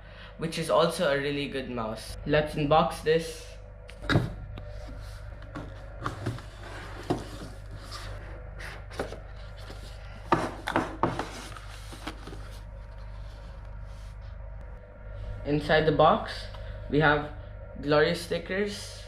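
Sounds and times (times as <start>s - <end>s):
steady low hum: 0.0s - 19.0s
packaging rubbing and scraping: 6.0s - 14.1s.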